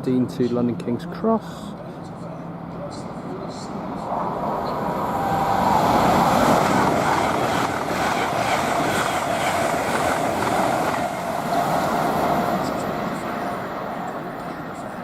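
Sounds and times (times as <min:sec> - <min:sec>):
train passing at speed: 0:00.0 - 0:15.0.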